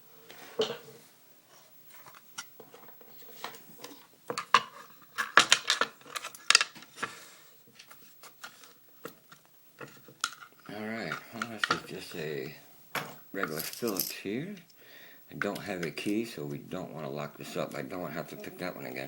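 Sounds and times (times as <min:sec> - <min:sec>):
small tools clinking on work surface: 0:13.4 - 0:14.3.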